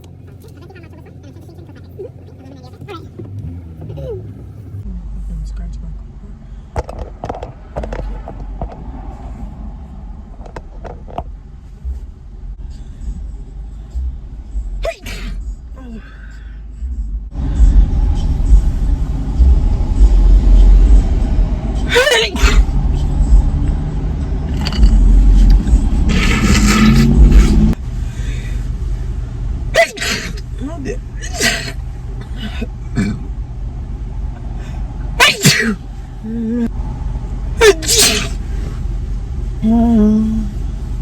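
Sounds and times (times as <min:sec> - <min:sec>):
car engine idling: 0:00.0 - 0:41.0
rushing scraping noise: 0:24.3 - 0:27.8.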